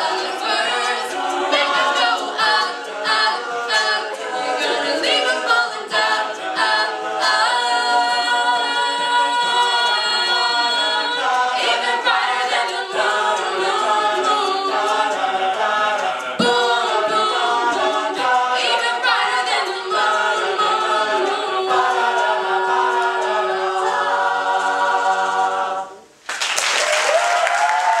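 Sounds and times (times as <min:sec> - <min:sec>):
a cappella group singing: 0:00.0 - 0:26.2
audience applause: 0:26.2 - 0:28.0.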